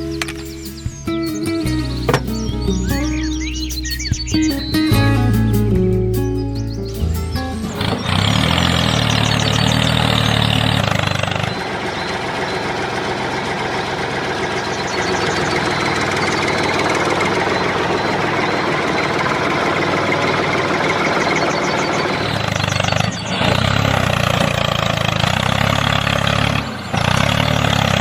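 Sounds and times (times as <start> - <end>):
motor running with rattling knock: 2.0 - 2.5.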